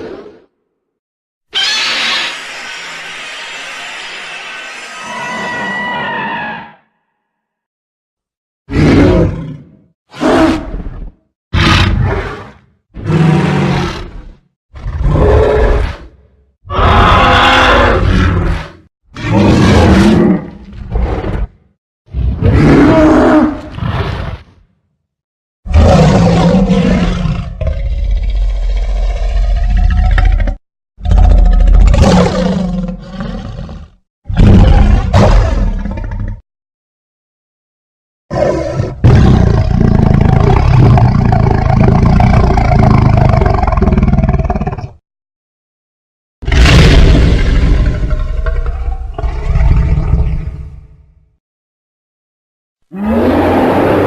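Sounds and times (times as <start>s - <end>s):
monster roar: 14.8s - 21.6s, 22.3s - 24.2s, 25.7s - 36.4s, 46.4s - 50.8s, 52.9s - 54.0s.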